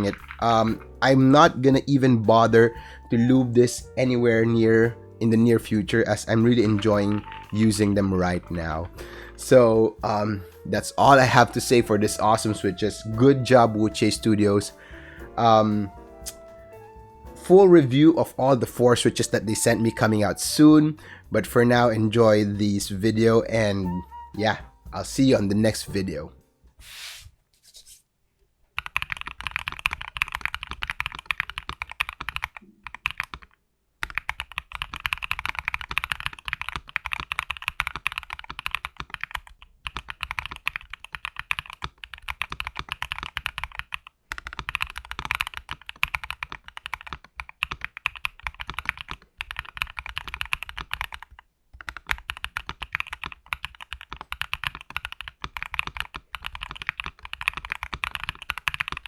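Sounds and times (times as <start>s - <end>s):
mechanical keyboard typing: 0.0s - 1.5s, 6.7s - 8.4s, 28.8s - 59.0s.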